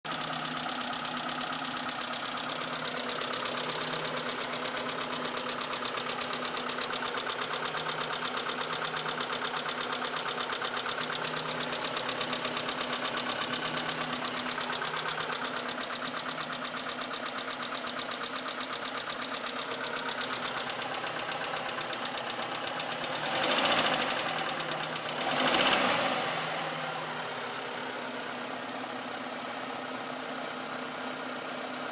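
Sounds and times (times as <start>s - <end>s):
car engine idling with ticking: 0.0s - 31.9s.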